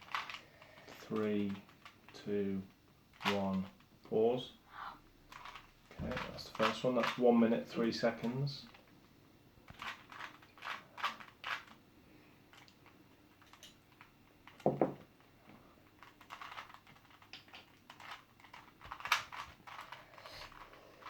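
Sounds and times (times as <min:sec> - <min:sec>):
puzzle cube clicking: 0:16.2 - 0:20.8.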